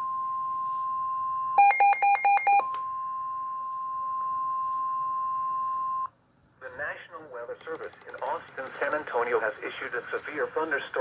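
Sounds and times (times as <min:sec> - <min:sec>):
steady alarm tone: 0:01.6 - 0:06.0.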